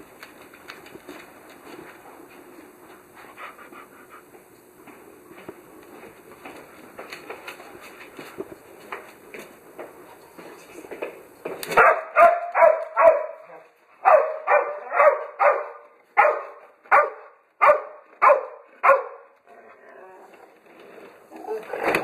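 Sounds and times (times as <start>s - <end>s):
dog barking: 11.7s - 19.3s.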